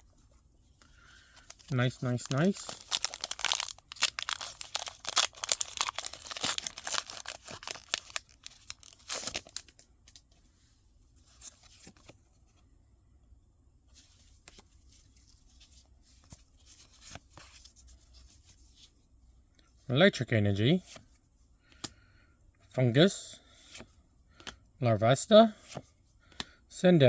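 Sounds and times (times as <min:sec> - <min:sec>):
foil wrapper tearing and crinkling: 0:01.6 - 0:09.8.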